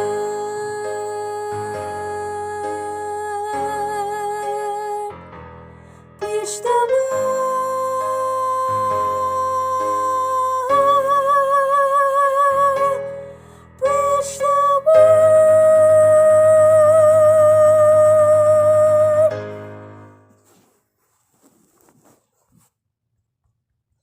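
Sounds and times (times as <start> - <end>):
soprano singing with vibrato: 0.0 - 5.3, 6.2 - 19.9.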